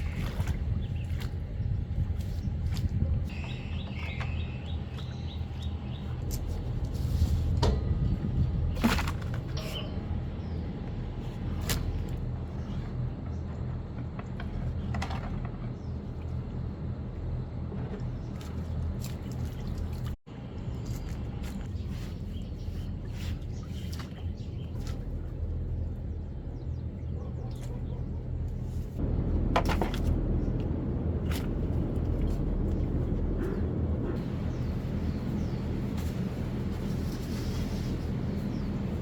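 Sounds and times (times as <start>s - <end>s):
low motor hum: 0.0s - 39.0s
bird chirps: 3.3s - 6.2s.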